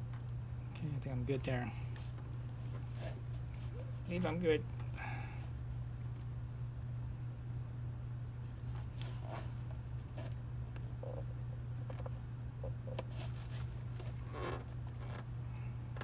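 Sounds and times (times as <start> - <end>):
steady low hum: 0.0 - 16.0
hands clicking and scratching relay: 8.7 - 16.0.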